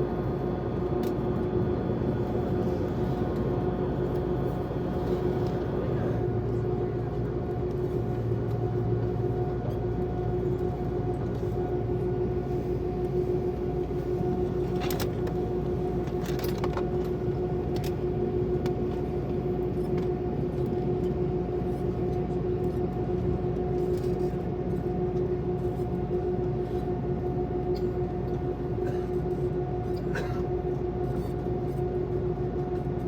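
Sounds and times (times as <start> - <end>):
airliner drone: 0.0 - 33.0.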